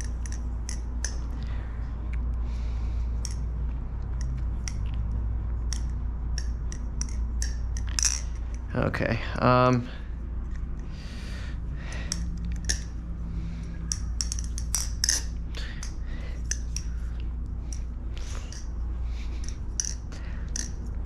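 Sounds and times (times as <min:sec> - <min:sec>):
steady low hum: 0:00.0 - 0:21.0
butterfly knife metallic clicks: 0:05.7 - 0:08.6, 0:12.0 - 0:12.9, 0:13.8 - 0:16.9, 0:19.4 - 0:20.8.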